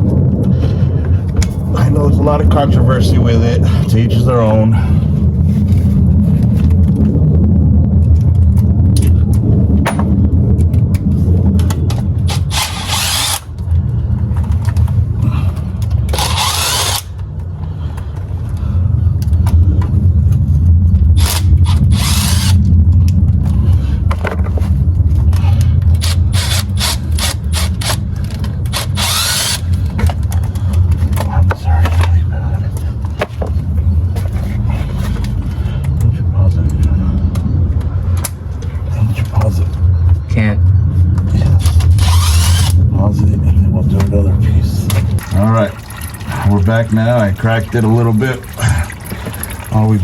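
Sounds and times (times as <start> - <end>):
low rumble: 0.0 - 50.0
ratchet wrench clicking: 12.3 - 13.5, 16.1 - 17.2, 28.7 - 29.8, 42.0 - 42.8.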